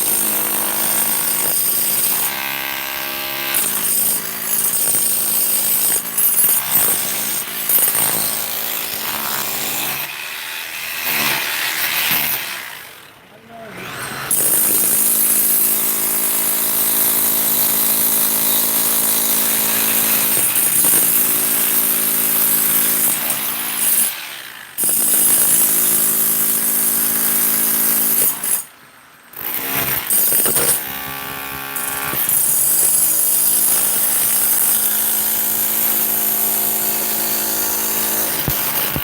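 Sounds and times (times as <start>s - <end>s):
handheld power tool running: 13.7s - 28.7s, 29.4s - 39.0s.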